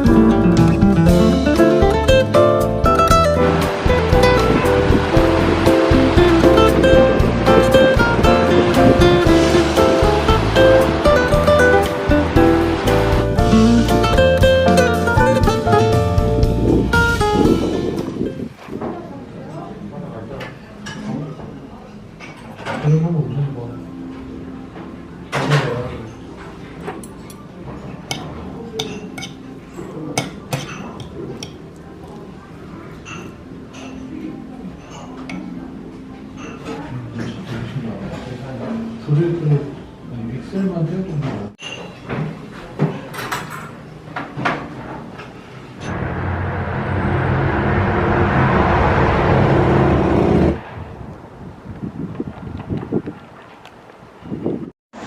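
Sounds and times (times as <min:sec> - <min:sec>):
dishes and cutlery clinking: 0:25.3 - 0:32.2, 0:32.9 - 0:38.9, 0:41.3 - 0:45.6.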